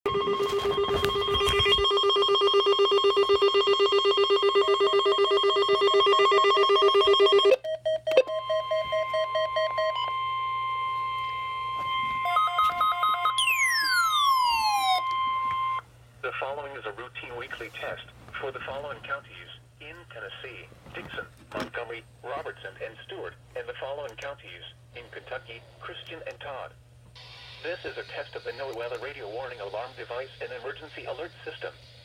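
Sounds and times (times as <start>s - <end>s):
pulsing electronic alert chord: 11.8s - 15.8s.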